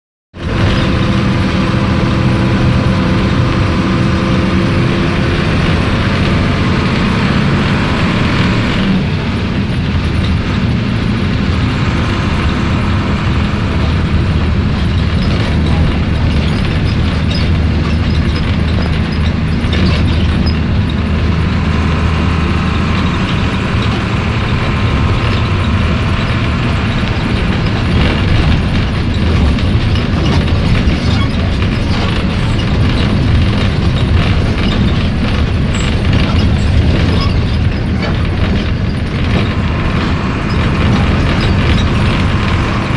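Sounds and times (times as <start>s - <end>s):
bus diesel engine running: 0.3s - 42.9s.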